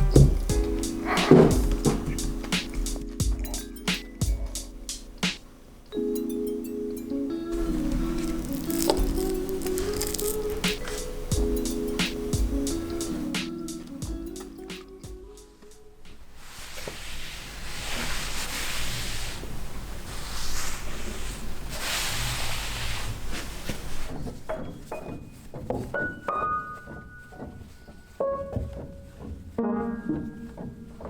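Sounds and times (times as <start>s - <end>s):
piano notes: 0.0s - 16.1s, 24.5s - 31.0s.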